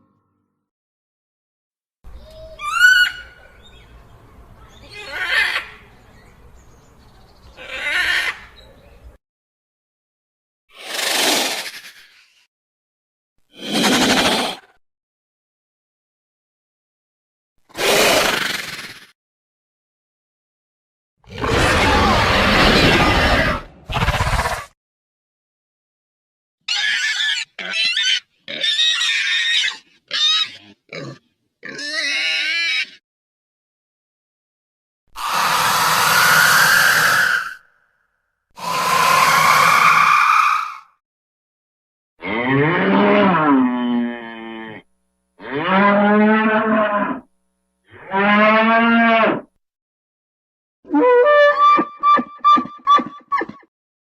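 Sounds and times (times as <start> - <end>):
harsh breathy creature calls: 10.7 - 12.4, 13.5 - 14.8, 17.7 - 19.1, 35.2 - 37.7, 38.6 - 41.0
high whinny-like creature call: 21.3 - 24.7, 35.2 - 37.7, 38.6 - 40.9.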